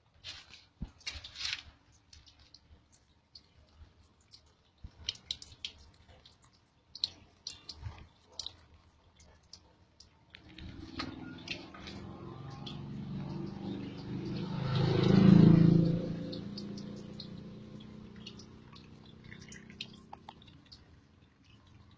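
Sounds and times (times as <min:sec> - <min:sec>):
vehicle engine passing: 0:10.4 - 0:20.9.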